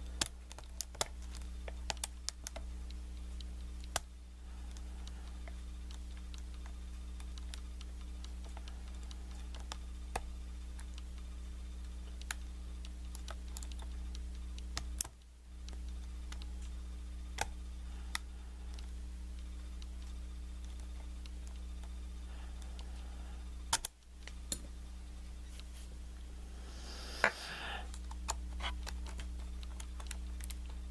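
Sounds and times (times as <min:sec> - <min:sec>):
low electrical hum: 0:00.0 - 0:30.9.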